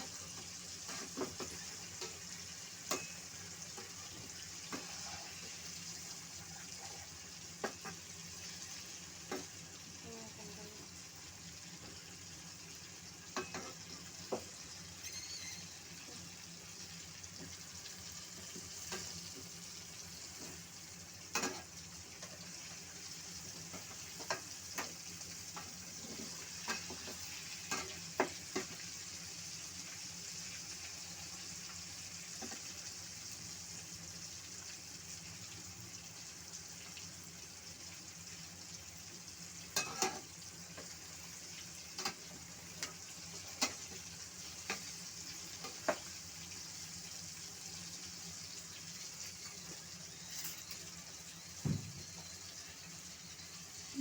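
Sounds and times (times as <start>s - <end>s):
food sizzling in hot oil: 0.0s - 54.0s
sharp pops and knocks: 51.6s - 52.0s.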